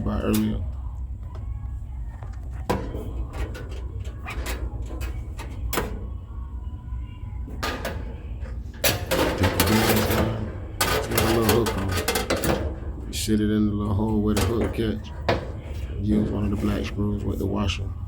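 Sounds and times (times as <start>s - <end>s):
steady low hum: 0.0s - 18.0s
scraping and rattling: 2.0s - 6.2s, 7.4s - 13.3s
grill parts clicking and knocking: 2.3s - 6.2s, 7.4s - 13.2s, 14.0s - 16.8s.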